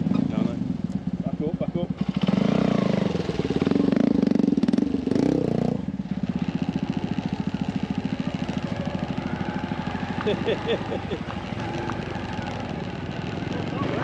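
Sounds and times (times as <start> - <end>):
small motorcycle engine revving: 1.8 - 14.0.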